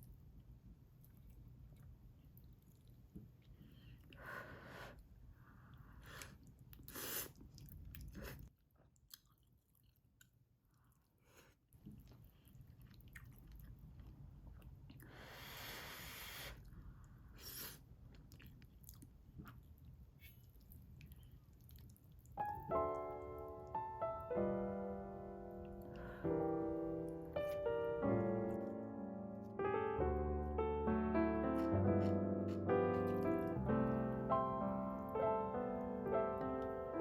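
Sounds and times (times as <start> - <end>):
person chewing: 1.0 - 4.2, 5.7 - 15.3, 16.6 - 22.6, 32.9 - 33.4
piano music: 22.4 - 37.0.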